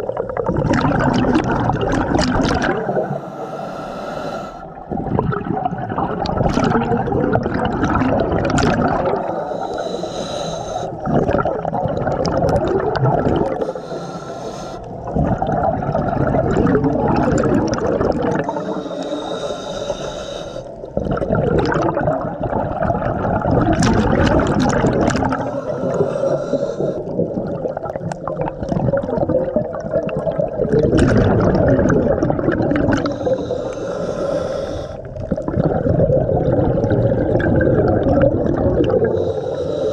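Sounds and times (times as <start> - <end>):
rushing exhale bubbles: 0.0 - 39.9
hissing regulator inhale: 2.8 - 4.7, 9.2 - 11.0, 13.6 - 14.9, 18.4 - 20.8, 25.3 - 27.1, 32.9 - 35.1, 39.1 - 39.9.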